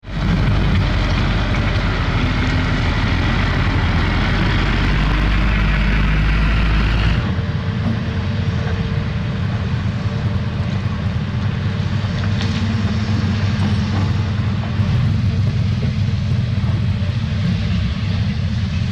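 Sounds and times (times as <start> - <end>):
heavy diesel engines rumbling: 0.0 - 18.9.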